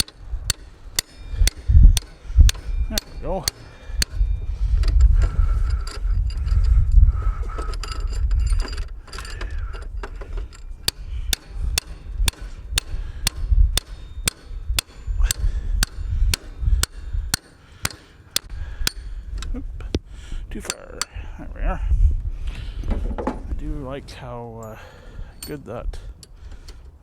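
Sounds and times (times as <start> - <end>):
metal knocking: 0.0 - 6.7, 7.6 - 19.6
sharp metallic clicks: 0.0 - 6.8, 7.7 - 21.2
low rumbling: 0.0 - 26.6.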